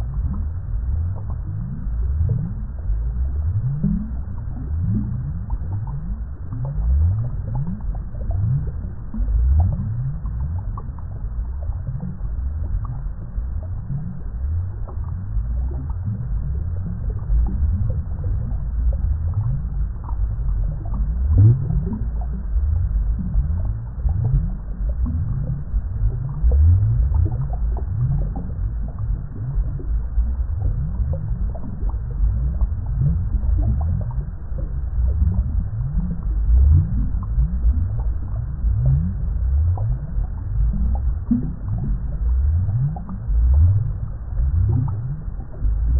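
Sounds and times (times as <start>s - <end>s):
water bubbling: 0.0s - 45.9s.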